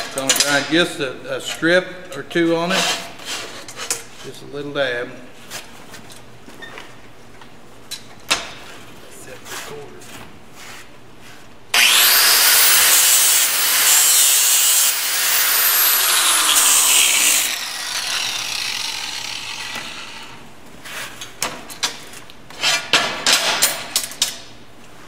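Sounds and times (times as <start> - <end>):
grinder grinding steel: 11.8 - 20.4.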